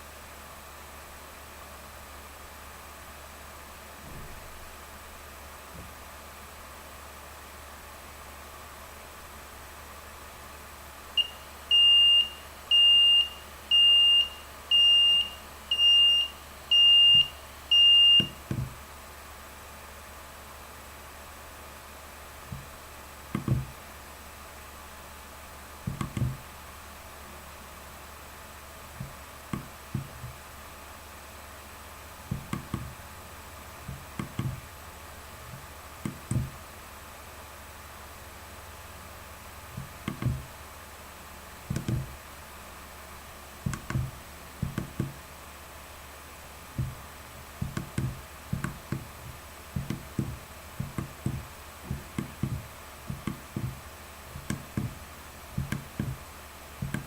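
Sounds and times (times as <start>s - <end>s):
steady low hum: 0.0s - 57.0s
alarm clock buzzer beeping: 11.2s - 18.4s
dull knocks: 18.2s - 18.8s, 23.3s - 23.8s, 25.9s - 26.4s, 29.0s - 30.4s, 32.3s - 33.0s, 33.9s - 34.7s, 35.5s - 36.6s, 39.8s - 40.5s, 41.7s - 42.2s, 43.6s - 45.2s, 46.8s - 55.0s, 55.6s - 57.0s.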